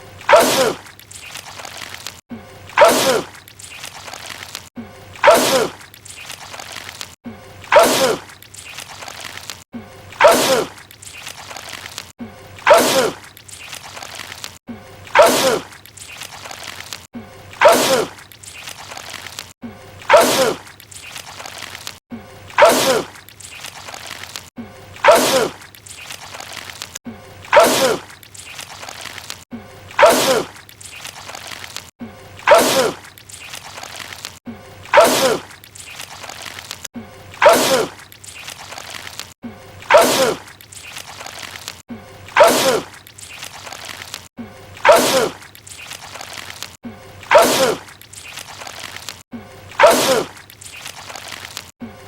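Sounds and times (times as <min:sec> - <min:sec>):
man sneezing: 0:27.5 - 0:28.0, 0:30.0 - 0:30.5, 0:39.9 - 0:40.4, 0:42.4 - 0:42.9, 0:44.8 - 0:45.4, 0:47.3 - 0:47.8.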